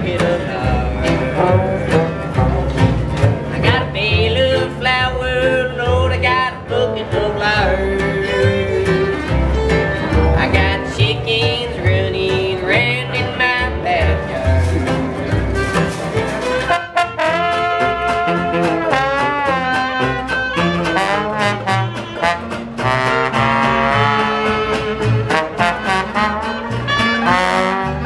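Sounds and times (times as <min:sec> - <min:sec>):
fiddle melody: 0:00.0 - 0:28.0
plucked bass notes: 0:00.0 - 0:28.0.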